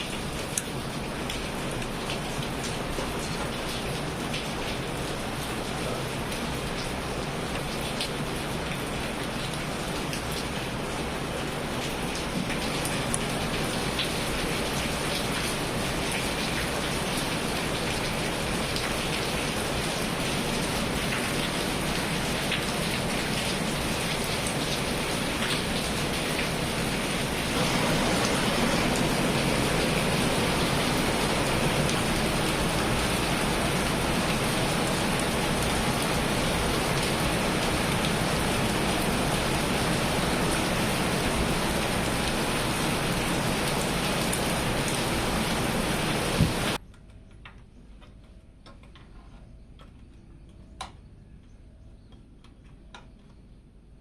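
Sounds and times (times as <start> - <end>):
steady rushing noise: 26.6 - 40.8.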